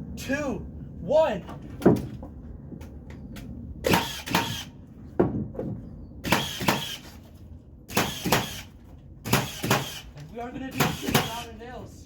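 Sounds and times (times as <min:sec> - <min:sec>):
lumber knocks and ticks: 0:01.5 - 0:03.5
hammer driving nails into wood: 0:03.9 - 0:04.7, 0:06.2 - 0:07.1, 0:07.9 - 0:11.4.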